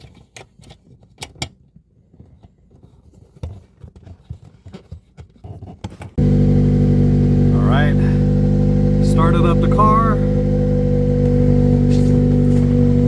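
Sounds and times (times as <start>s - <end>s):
clicks and knocks of handling: 0.0s - 6.2s.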